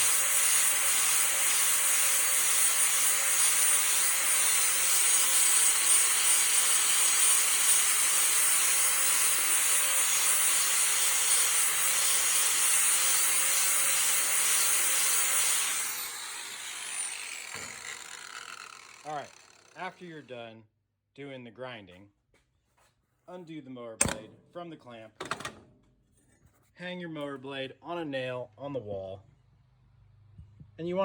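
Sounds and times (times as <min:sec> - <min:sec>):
grinder spinning down: 0:00.0 - 0:20.0
angle grinder grinding steel: 0:00.0 - 0:20.3.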